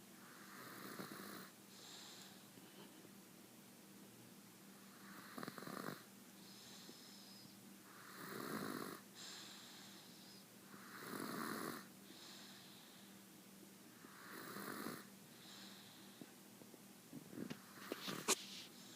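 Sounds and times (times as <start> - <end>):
soft hissing breath: 0.1 - 3.2, 4.7 - 16.5, 17.3 - 18.9
baby snoring: 0.3 - 2.2, 4.9 - 12.8, 14.0 - 16.0.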